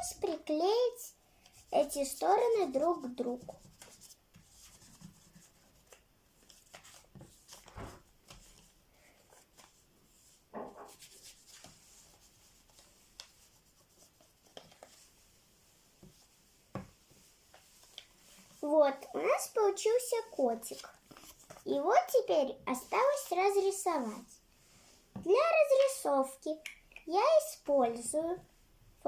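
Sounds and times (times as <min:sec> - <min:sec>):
paper rustling and rubbing: 0:00.2 - 0:15.4, 0:17.0 - 0:24.2.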